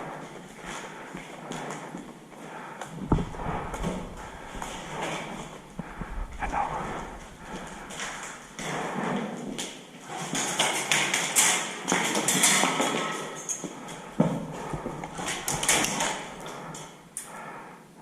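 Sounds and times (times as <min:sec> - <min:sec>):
footsteps: 0:00.0 - 0:17.0
sharp knocks: 0:03.0 - 0:05.0
thuds: 0:03.0 - 0:08.3.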